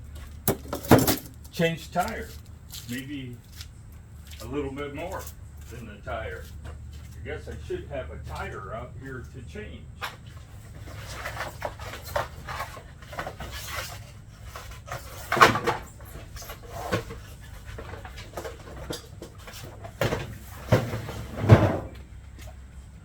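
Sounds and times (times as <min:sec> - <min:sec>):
objects knocking and clattering: 0:00.3 - 0:01.5, 0:10.1 - 0:22.1.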